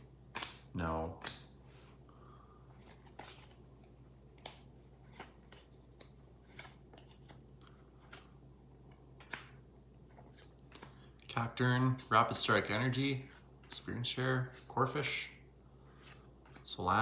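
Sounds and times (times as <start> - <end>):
cards clicking and rustling: 0.2 - 1.5, 2.7 - 11.1, 16.0 - 16.8.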